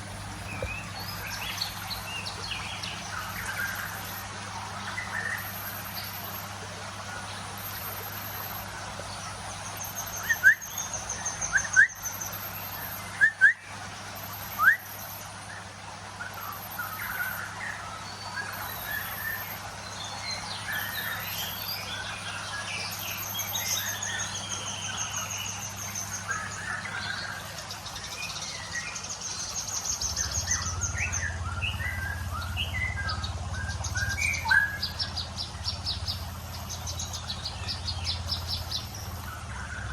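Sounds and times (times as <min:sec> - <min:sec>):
birds chirping: 0:00.0 - 0:39.9
low hum: 0:29.6 - 0:39.9.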